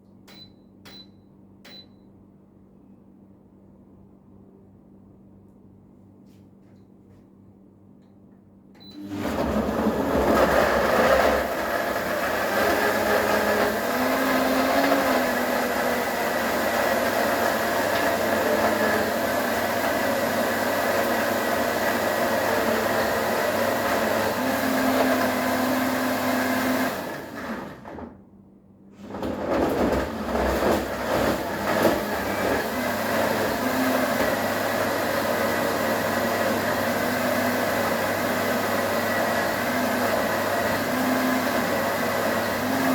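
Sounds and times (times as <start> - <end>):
blender motor running: 9.0 - 27.9, 30.0 - 42.9.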